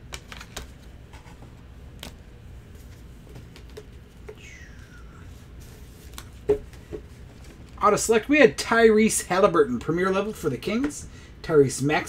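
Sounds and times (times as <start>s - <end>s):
trading cards clicking and tapping: 3.2s - 4.5s.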